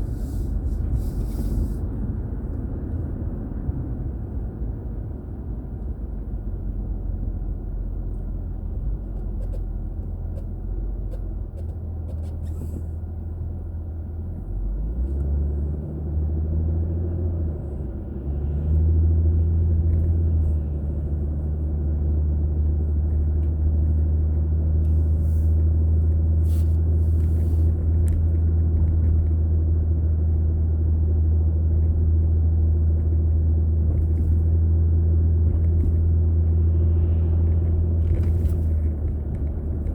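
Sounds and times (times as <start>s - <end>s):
car engine and road noise: 0.0s - 39.9s.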